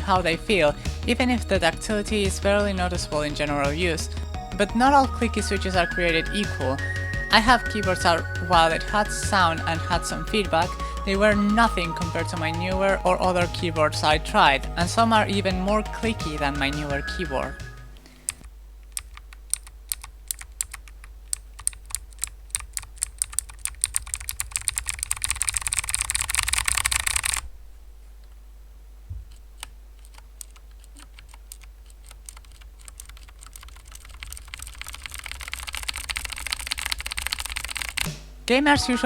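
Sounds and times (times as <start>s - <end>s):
clicky mechanical keyboard typing: 19.0s - 27.4s, 29.6s - 38.1s.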